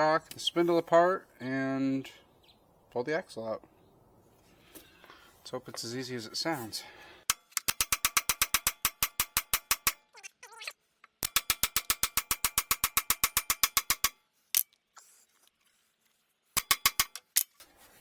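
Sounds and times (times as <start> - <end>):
ratchet wrench clicking: 7.3 - 10.0, 11.2 - 14.7.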